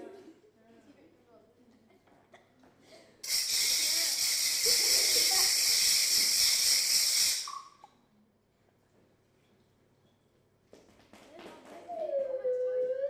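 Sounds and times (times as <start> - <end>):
loud steady hiss: 3.2 - 7.6.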